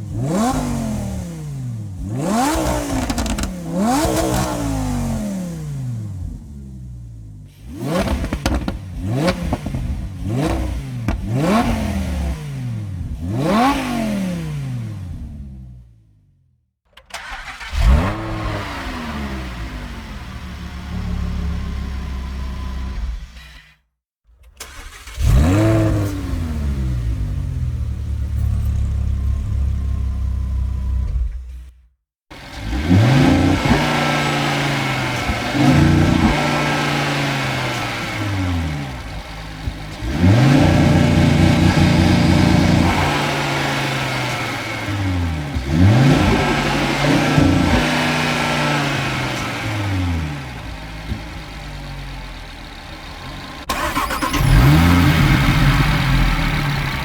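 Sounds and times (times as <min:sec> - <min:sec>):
car engine revving: 0:00.0 - 0:15.8, 0:17.2 - 0:23.4, 0:24.6 - 0:31.6, 0:32.3 - 0:57.0
car engine idling: 0:08.2 - 0:11.8, 0:32.3 - 0:57.0.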